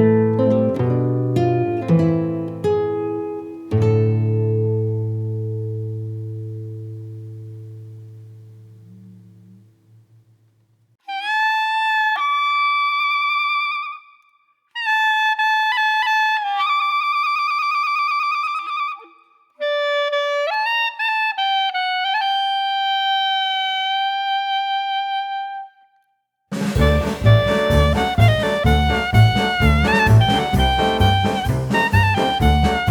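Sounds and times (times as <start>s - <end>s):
solo wind instrument playing slowly: 11.0s - 14.1s, 14.8s - 26.0s, 26.7s - 32.9s.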